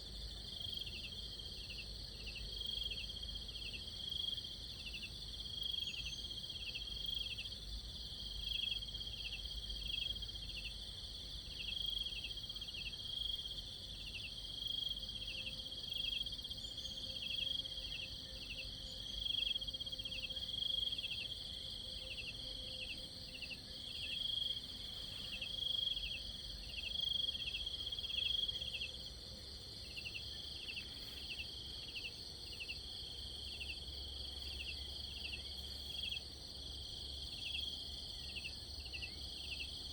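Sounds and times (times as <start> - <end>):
insects trilling: 0.0 - 39.9
short insect chirp: 11.5 - 39.9.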